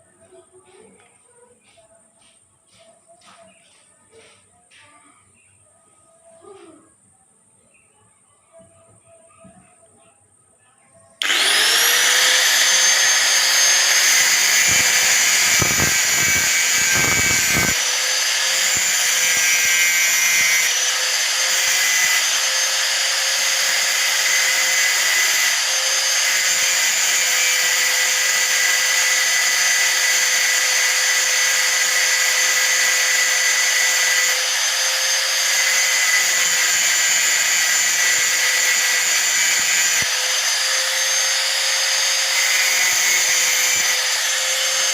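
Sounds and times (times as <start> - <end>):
angle grinder grinding metal: 11.2 - 44.9.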